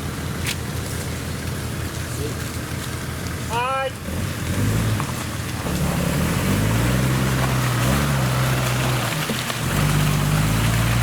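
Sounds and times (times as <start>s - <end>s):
truck engine revving: 4.0s - 11.0s.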